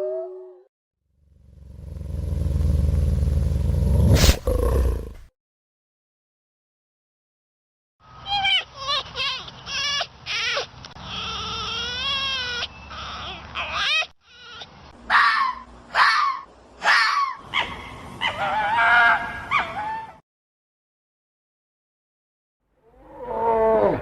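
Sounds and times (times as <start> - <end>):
long wavering animal call: 0.0 - 0.7
animal cries: 8.2 - 20.2.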